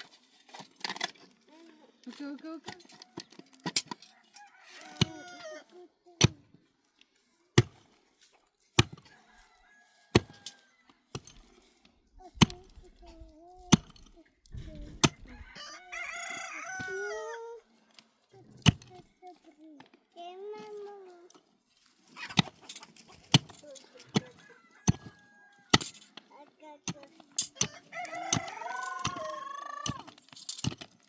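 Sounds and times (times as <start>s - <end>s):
rooster crowing: 4.1s - 5.6s, 9.1s - 10.8s, 15.2s - 17.5s, 24.3s - 25.8s, 27.7s - 30.1s.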